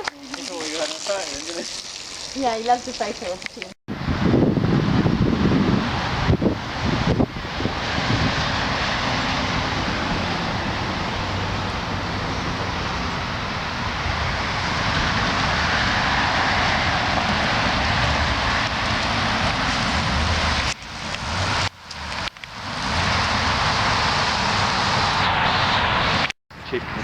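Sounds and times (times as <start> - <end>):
bicycle tyres rolling: 0.0 - 3.8, 13.9 - 26.3
wind over microphone: 3.9 - 27.0.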